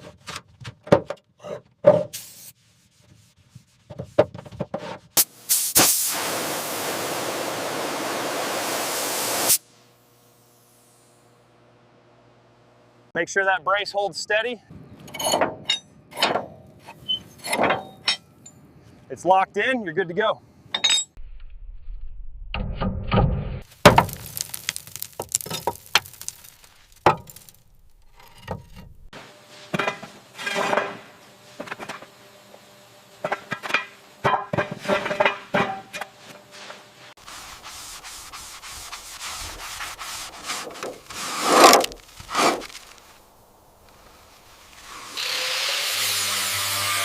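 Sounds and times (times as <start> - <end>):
hand tools scraping and knocking: 3.8 - 5.2, 23.8 - 32.1, 33.2 - 43.2.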